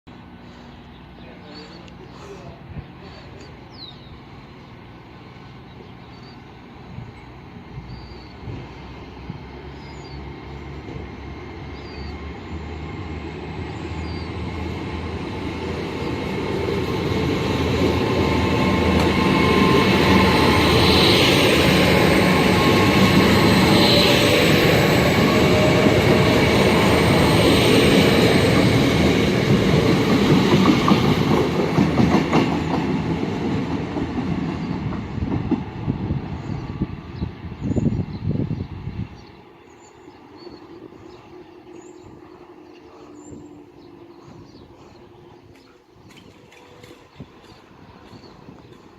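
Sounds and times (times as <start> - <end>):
train passing: 0.1 - 48.9.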